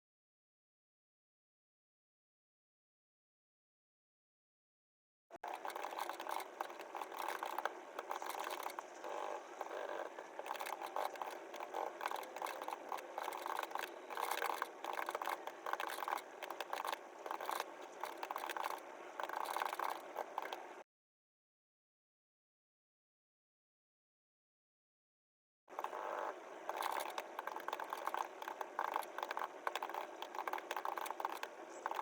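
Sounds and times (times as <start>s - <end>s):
keyboard typing clicks: 5.4s - 20.8s, 25.8s - 32.0s.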